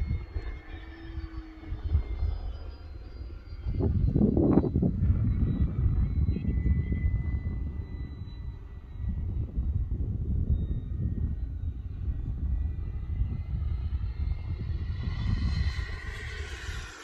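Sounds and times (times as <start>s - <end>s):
model airplane whine: 0.0s - 17.0s
wind buffeting microphone: 0.0s - 17.0s.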